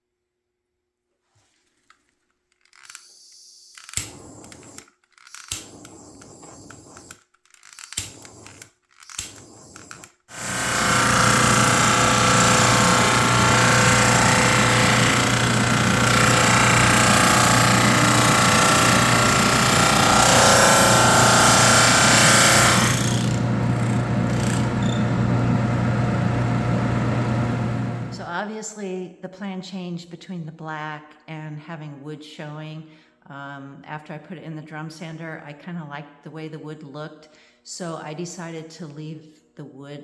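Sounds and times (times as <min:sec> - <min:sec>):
handling rustling: 0:01.2 - 0:05.6
drum sander humming: 0:09.2 - 0:28.2.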